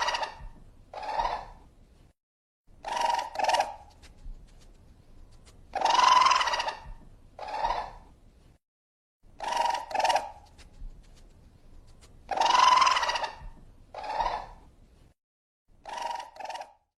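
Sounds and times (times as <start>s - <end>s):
raccoon calling: 0.0s - 1.6s, 2.8s - 4.0s, 5.7s - 8.0s, 9.4s - 10.6s, 12.3s - 14.6s, 15.8s - 16.8s.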